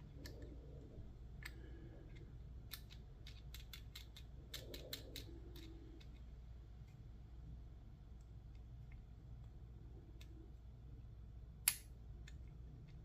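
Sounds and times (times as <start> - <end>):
small sharp tool clicks: 11.6 - 12.4.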